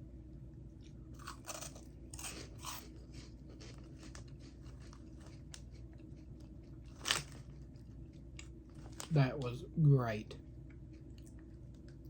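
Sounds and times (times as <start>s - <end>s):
chewing crunchy potato chip: 0.8s - 9.2s.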